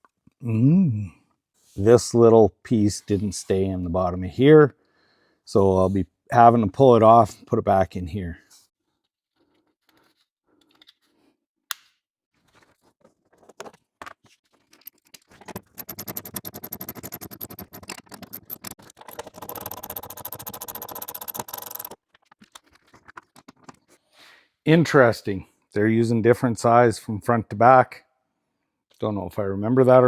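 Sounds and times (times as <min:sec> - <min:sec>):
impact wrench hammering: 0:15.5 - 0:22.0.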